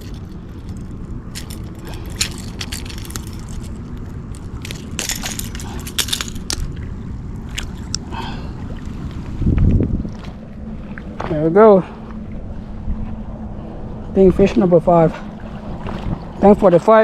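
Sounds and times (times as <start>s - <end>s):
fishing tackle clicks and scrapes: 0.0s - 8.1s
wind rumble on microphone: 0.0s - 17.0s.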